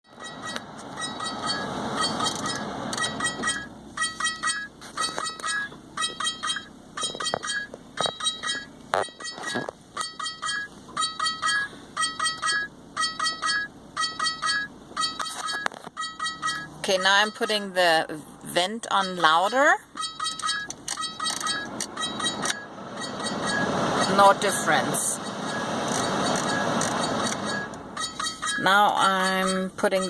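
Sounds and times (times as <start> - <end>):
high electronic chirping beeps: 20.0 - 24.3, 25.2 - 28.6.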